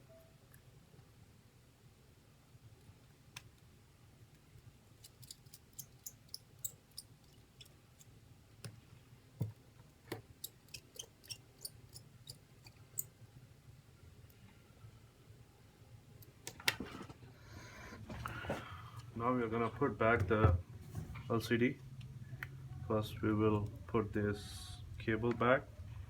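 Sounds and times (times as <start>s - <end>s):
small metal clicks of tools: 5.0s - 8.8s, 10.1s - 13.2s.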